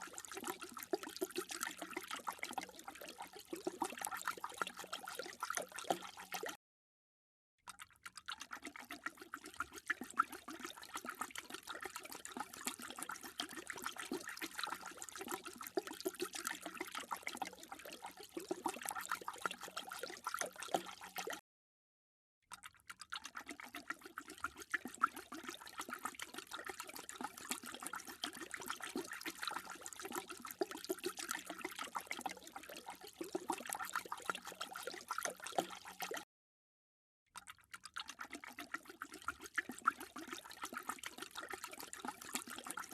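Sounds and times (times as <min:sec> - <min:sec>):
dog lapping water: 0:00.0 - 0:06.6, 0:07.7 - 0:21.4, 0:22.5 - 0:36.2, 0:37.4 - 0:42.9.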